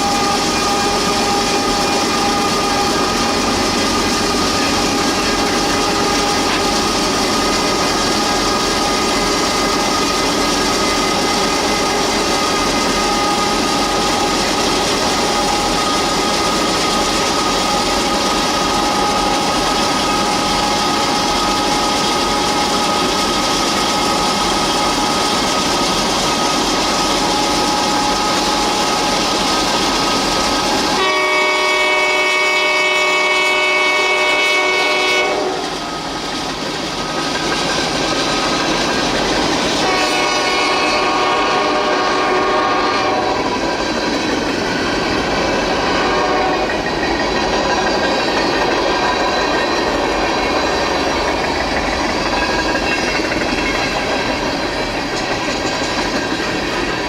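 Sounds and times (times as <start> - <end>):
train wheels on rail: 0.0 - 57.0
locomotive horn chord: 31.0 - 35.7, 39.8 - 43.4, 46.0 - 46.7.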